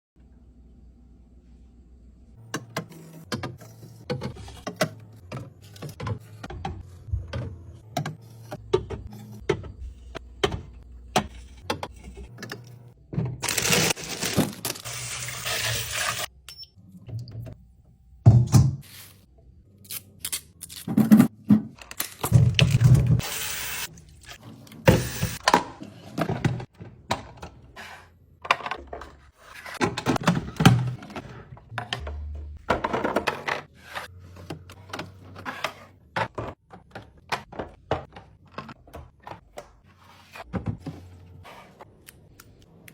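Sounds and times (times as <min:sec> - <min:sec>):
groceries knocking and clunking: 0:02.4 - 0:16.2, 0:20.8 - 0:23.3, 0:24.8 - 0:42.3.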